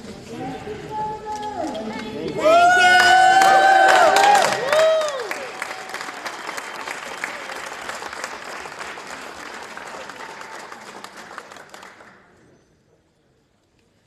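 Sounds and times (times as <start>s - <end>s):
crowd applauding: 2.4s - 12.4s.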